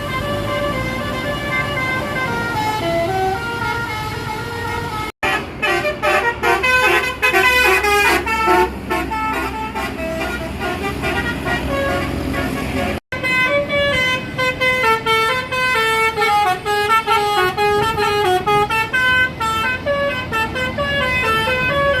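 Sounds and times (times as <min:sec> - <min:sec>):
bus engine rumble: 0:00.0 - 0:22.0
musical bus horn melody: 0:00.0 - 0:22.0.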